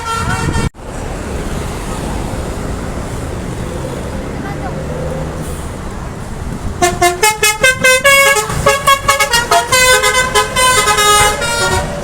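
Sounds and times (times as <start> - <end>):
multi-tone bus horn tune: 0.0 - 0.8, 6.8 - 12.0
road traffic noise: 0.0 - 12.0.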